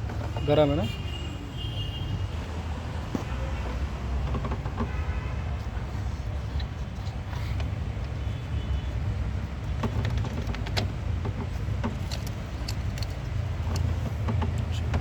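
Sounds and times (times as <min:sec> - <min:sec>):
metallic clicks of hand tools: 0:11.9 - 0:15.0.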